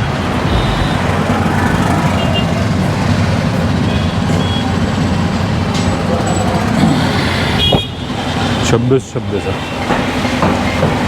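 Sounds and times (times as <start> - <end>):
low mechanical rumble: 0.4 - 1.8.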